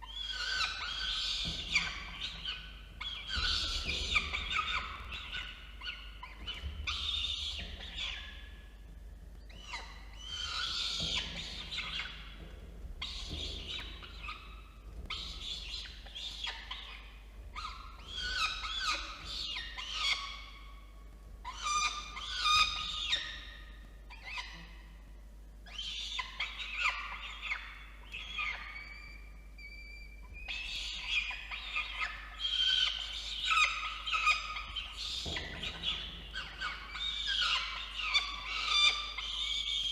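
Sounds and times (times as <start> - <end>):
falcon chicks screechy begging calls: 0.0 - 8.4, 9.5 - 12.3, 13.0 - 20.4, 21.4 - 23.5, 25.7 - 39.9.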